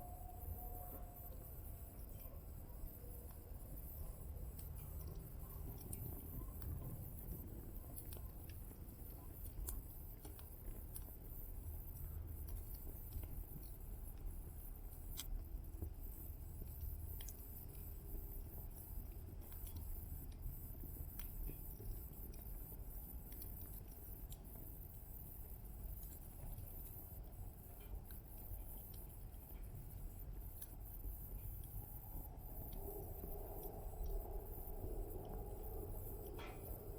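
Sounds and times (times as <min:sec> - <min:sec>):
fire low rumble: 0:28.6 - 0:36.9.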